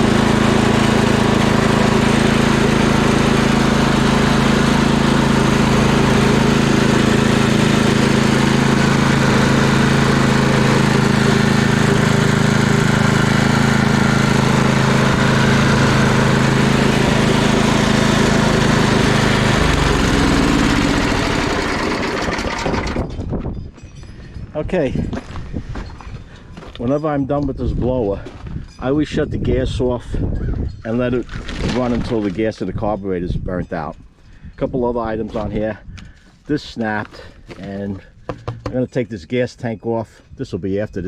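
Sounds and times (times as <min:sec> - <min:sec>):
snow blower engine running: 0:00.0 - 0:23.2.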